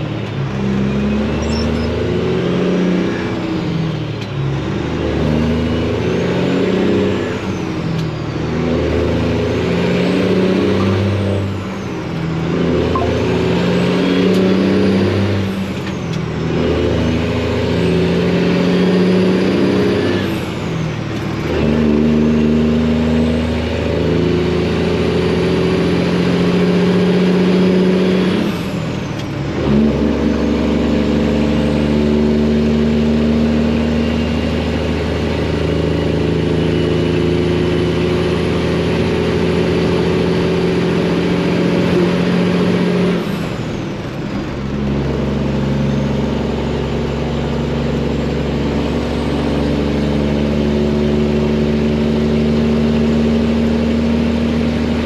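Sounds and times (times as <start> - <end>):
truck diesel engine shifting gears: 0.0 - 55.0
turbo whistle: 1.4 - 2.0, 13.0 - 14.2.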